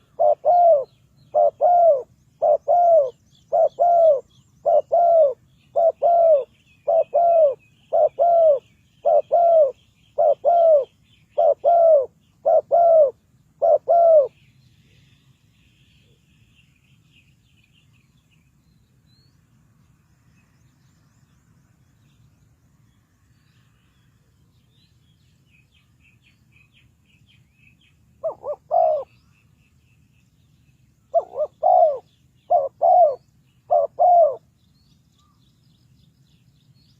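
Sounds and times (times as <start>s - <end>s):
dove cooing: 0.0s - 14.4s, 28.2s - 29.2s, 31.1s - 34.5s
small birds chirping: 0.0s - 36.9s.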